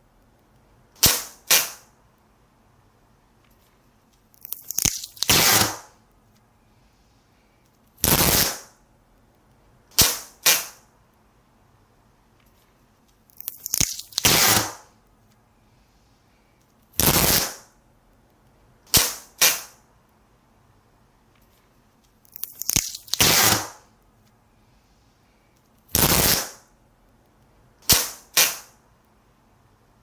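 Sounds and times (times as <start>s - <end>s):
duct tape ripping: 4.4s - 6.0s, 8.0s - 8.7s, 13.3s - 14.9s, 17.0s - 17.7s, 22.3s - 23.9s, 25.9s - 26.6s.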